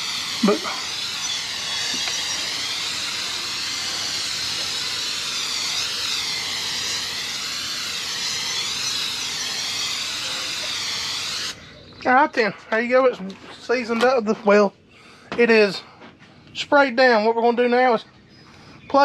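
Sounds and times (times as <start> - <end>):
aerosol spray hissing: 0.0 - 12.2.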